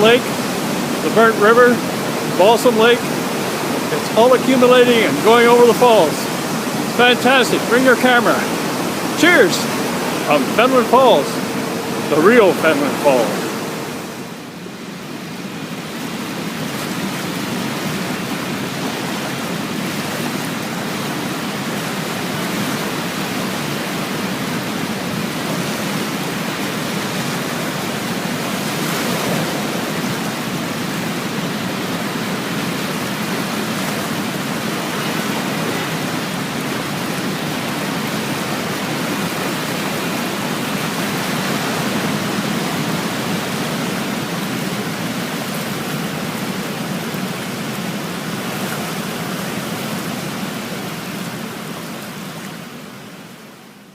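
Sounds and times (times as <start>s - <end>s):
waterfall rushing: 0.0s - 53.9s.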